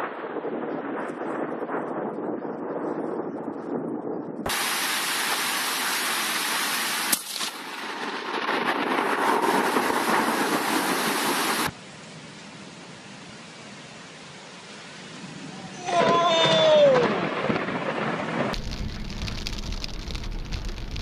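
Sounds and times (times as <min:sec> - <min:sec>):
sharp crack: 0:04.5 - 0:11.8, 0:16.5 - 0:21.0
heavy rain pouring: 0:04.5 - 0:21.0.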